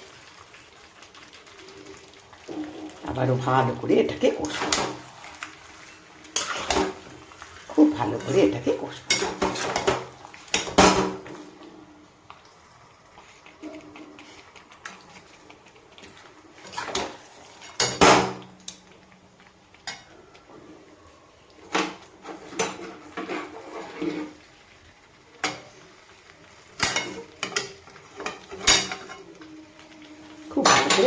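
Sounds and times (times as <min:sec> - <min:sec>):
spoon scraping a pan: 0:03.6 - 0:11.4, 0:13.2 - 0:18.2, 0:21.9 - 0:24.5, 0:26.8 - 0:29.5.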